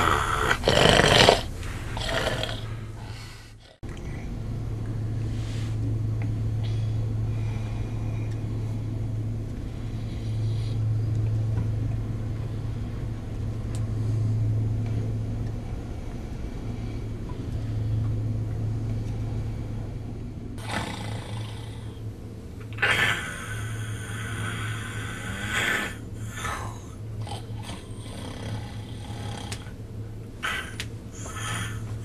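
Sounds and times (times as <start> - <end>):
man snoring loudly: 0.0 - 3.4, 20.6 - 22.0, 22.8 - 29.7, 30.4 - 31.9.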